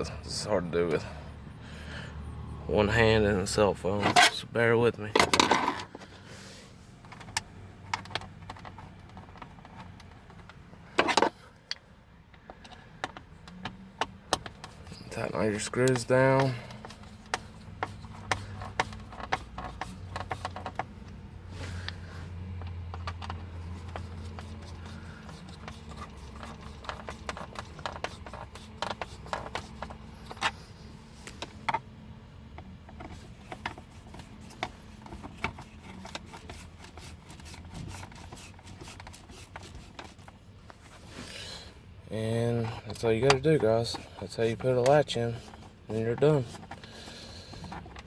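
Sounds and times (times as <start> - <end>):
screwdriver clicking and scraping: 12.5 - 31.8, 32.5 - 40.5, 42.5 - 48.0.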